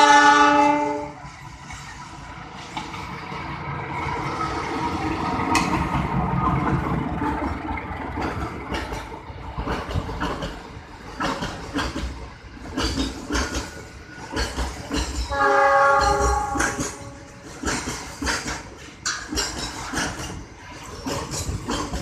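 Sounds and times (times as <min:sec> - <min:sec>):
train horn: 0:00.0 - 0:01.2, 0:15.3 - 0:17.5
train wheels clacking on rails: 0:00.0 - 0:22.0.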